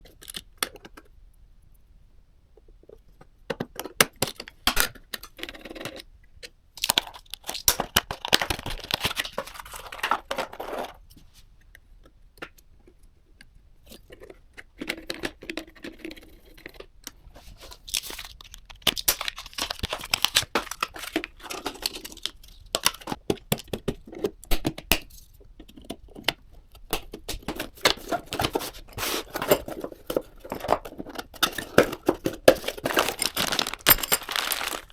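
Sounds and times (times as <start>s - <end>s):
plastic wrap crinkling and tearing: 17.7s - 22.4s, 31.6s - 34.9s.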